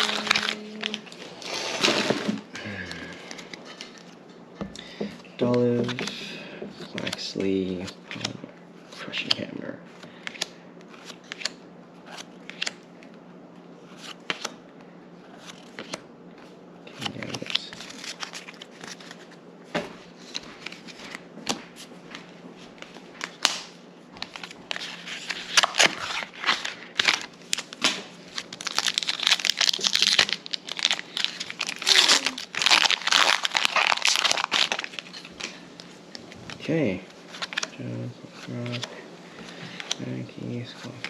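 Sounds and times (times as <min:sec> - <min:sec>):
foil wrapper crinkling: 0:00.0 - 0:01.2, 0:24.3 - 0:35.5.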